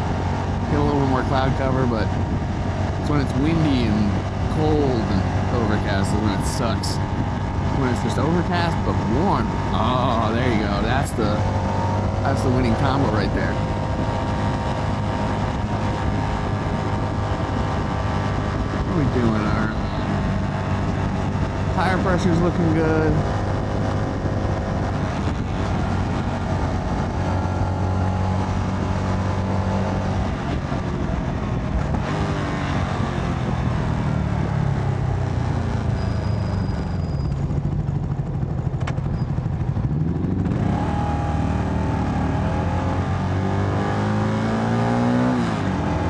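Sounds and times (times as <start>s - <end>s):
wind rush: 0.0s - 22.1s
motorcycle engine running: 0.0s - 44.2s.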